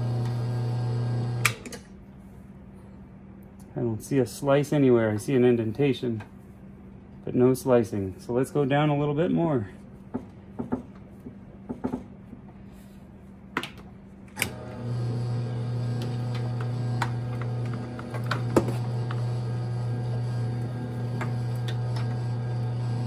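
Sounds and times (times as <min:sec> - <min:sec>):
motor humming: 0:00.0 - 0:01.6, 0:14.4 - 0:23.0.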